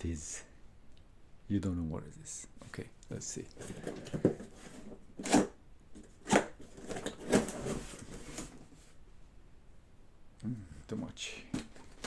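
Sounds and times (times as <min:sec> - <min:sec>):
cardboard and paper rustling: 0:03.5 - 0:09.0, 0:11.5 - 0:12.0.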